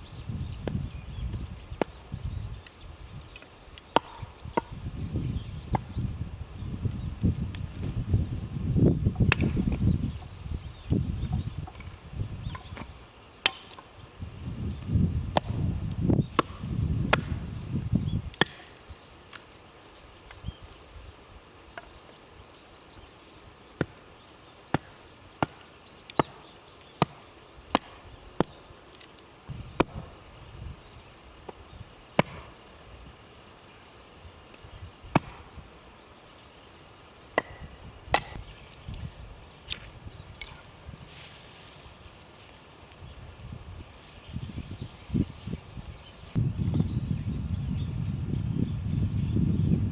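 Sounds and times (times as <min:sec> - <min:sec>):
wood being chopped: 0:03.8 - 0:04.8, 0:09.2 - 0:09.9, 0:11.7 - 0:13.8, 0:15.3 - 0:17.6, 0:18.3 - 0:18.7, 0:24.7 - 0:29.2, 0:29.8 - 0:30.1, 0:32.2 - 0:32.5, 0:35.1 - 0:35.6, 0:37.3 - 0:38.4.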